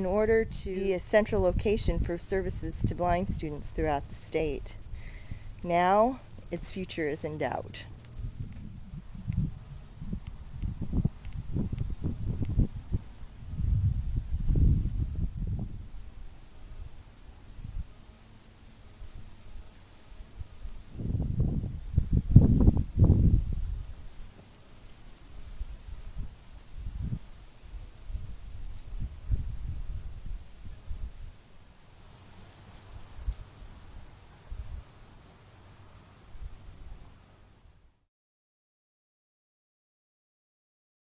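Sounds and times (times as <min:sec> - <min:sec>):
insects chirring: 0:00.0 - 0:15.8, 0:20.3 - 0:32.4.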